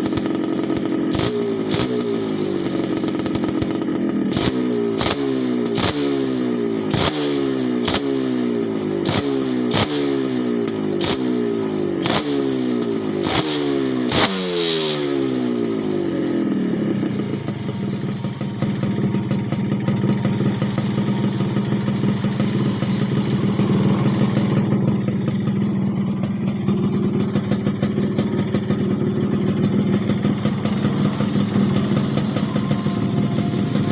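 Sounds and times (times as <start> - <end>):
motorcycle engine idling: 0.0 - 33.9.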